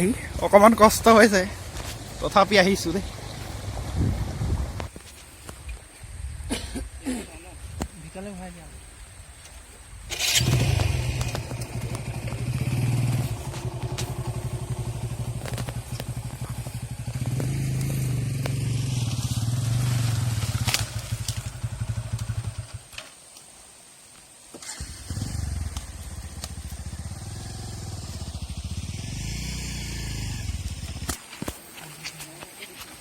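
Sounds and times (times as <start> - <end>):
motorcycle engine running: 0.0 - 4.9, 10.1 - 22.8, 24.8 - 31.2.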